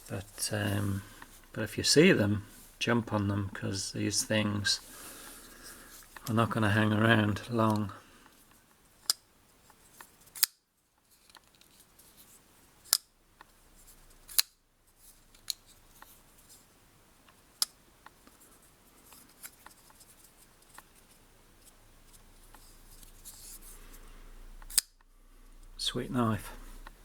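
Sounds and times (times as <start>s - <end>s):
flipper knife clicking open and shut: 24.6s - 25.0s.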